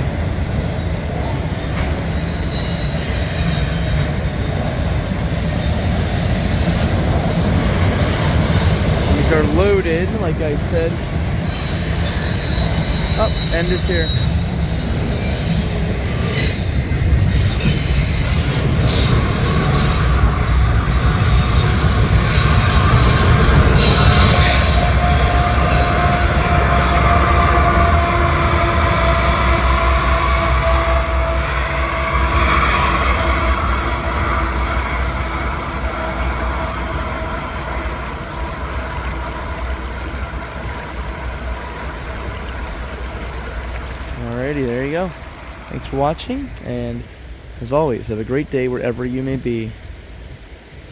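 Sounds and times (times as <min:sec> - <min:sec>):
high wheel squeal: 0:00.0 - 0:35.6
freight train rumbling past: 0:00.0 - 0:50.9
river water flowing over rocks: 0:33.1 - 0:48.1.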